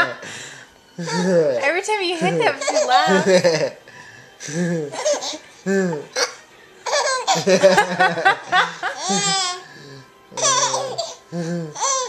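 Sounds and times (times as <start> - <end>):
adult laughing: 2.7 - 3.8, 7.3 - 9.6
child giggling: 7.2 - 9.6.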